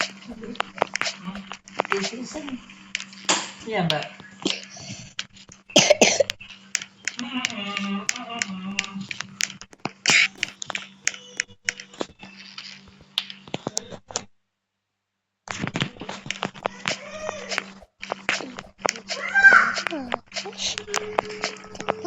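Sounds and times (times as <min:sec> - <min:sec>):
steady low hum: 0:00.0 - 0:14.2, 0:15.5 - 0:22.0
person's voice: 0:18.3 - 0:22.0.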